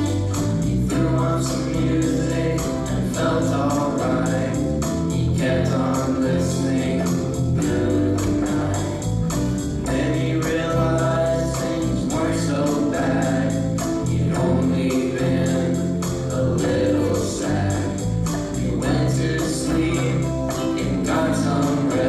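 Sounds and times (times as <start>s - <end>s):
voices singing together: 0.0s - 22.0s.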